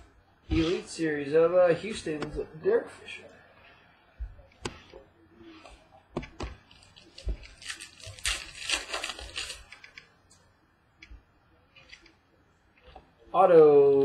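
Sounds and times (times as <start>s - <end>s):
packaging crinkling and sliding: 6.7s - 9.8s.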